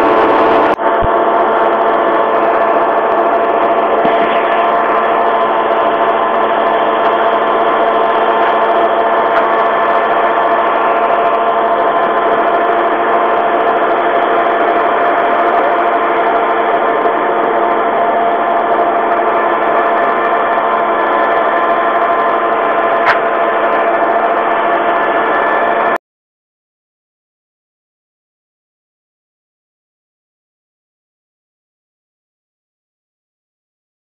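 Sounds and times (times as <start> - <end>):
combine harvester drone: 0.0 - 26.0.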